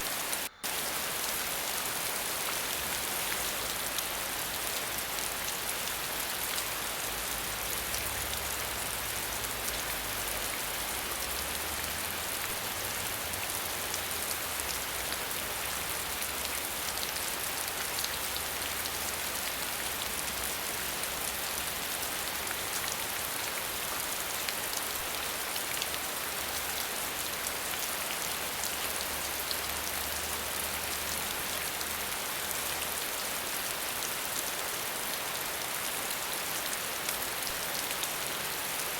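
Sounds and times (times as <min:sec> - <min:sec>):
waterfall rushing: 0:00.0 - 0:05.0.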